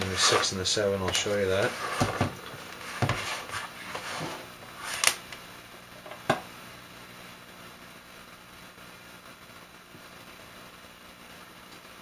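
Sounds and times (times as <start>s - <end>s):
faint room hum: 0.0s - 12.0s.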